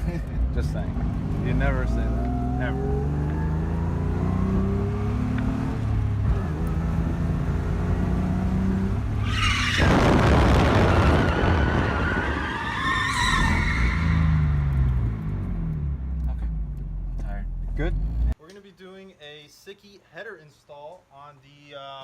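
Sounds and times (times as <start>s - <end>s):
tyres skidding and squealing: 8.7s - 18.4s
car engine running: 14.6s - 18.4s.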